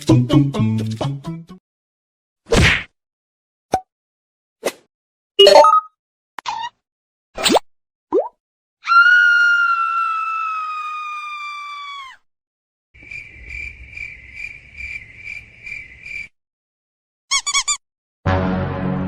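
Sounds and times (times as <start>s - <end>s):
crickets chirping: 13.0s - 16.3s.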